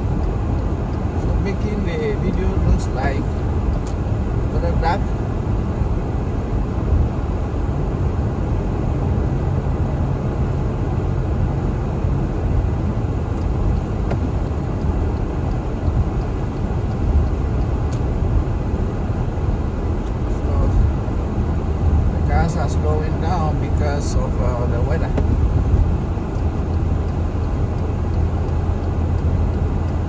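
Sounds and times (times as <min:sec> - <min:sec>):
car road and engine rumble: 0:00.0 - 0:30.0
faint light ticks: 0:00.2 - 0:04.0, 0:13.3 - 0:18.1, 0:24.7 - 0:30.0.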